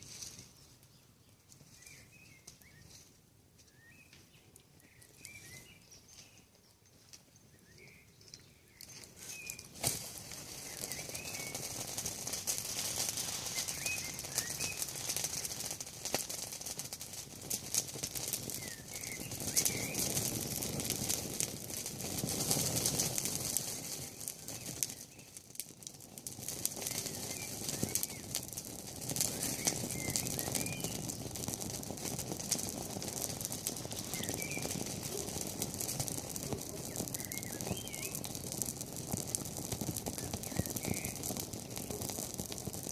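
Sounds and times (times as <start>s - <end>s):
campfire crackling: 0.0s - 42.9s
small bird chirping: 3.7s - 9.8s, 10.6s - 11.7s, 13.4s - 15.1s, 18.5s - 20.2s, 26.8s - 28.4s, 29.2s - 31.2s, 33.9s - 35.6s, 36.4s - 38.4s, 40.0s - 42.2s.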